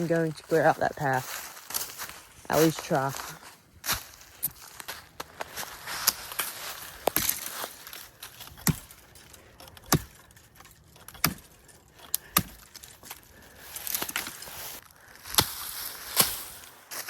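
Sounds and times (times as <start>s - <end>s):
twigs and leaves rustling: 0.0s - 17.0s
chopping blows on branches: 5.6s - 9.1s, 11.0s - 13.2s, 15.2s - 16.7s.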